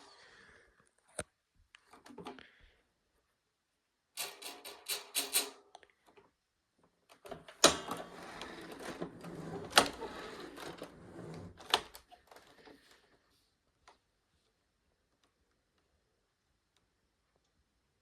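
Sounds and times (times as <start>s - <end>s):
vacuum cleaner clicking and rattling: 4.2s - 5.6s, 7.1s - 12.8s.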